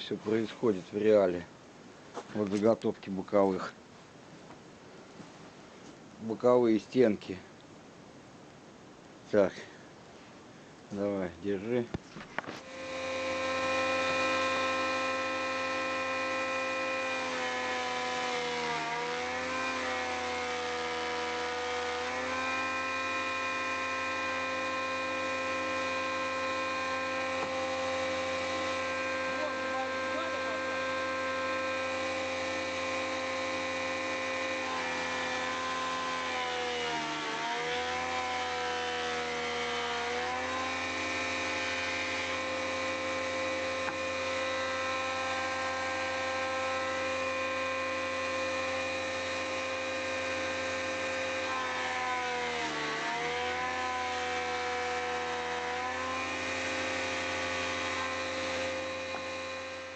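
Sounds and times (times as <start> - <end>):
woodworking machine cutters spinning: 12.4 - 59.9.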